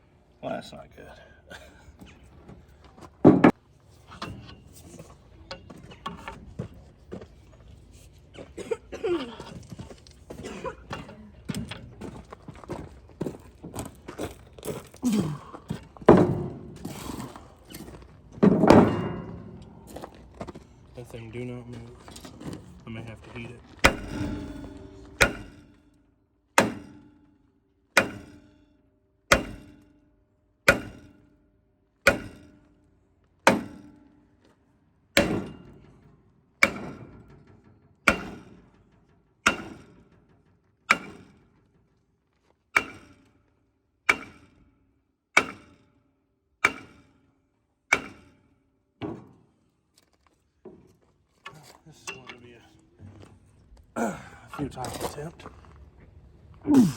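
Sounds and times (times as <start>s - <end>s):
hammer striking metal drum: 18.4s - 20.2s, 23.8s - 25.8s, 29.3s - 29.8s, 38.1s - 38.6s.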